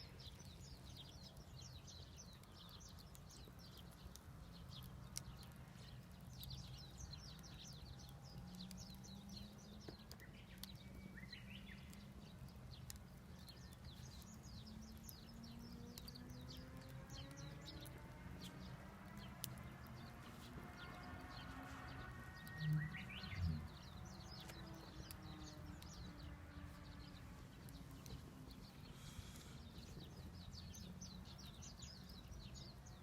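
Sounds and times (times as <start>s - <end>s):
small birds chirping: 0.0s - 33.0s
low drone rising in pitch: 15.2s - 29.1s.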